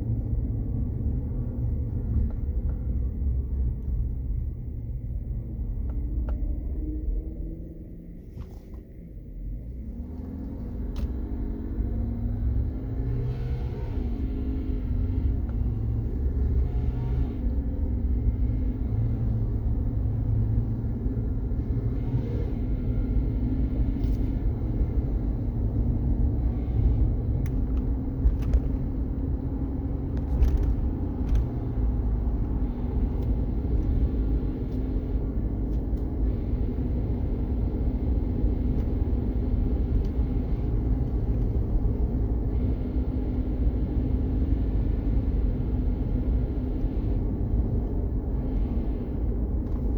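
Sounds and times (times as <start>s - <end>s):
truck low rumble: 0.0s - 49.9s.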